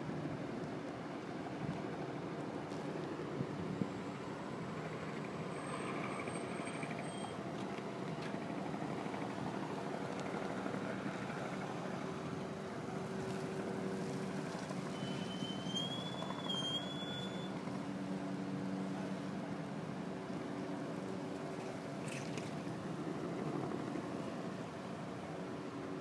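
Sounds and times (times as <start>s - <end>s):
helicopter engine and rotor: 3.8s - 13.2s.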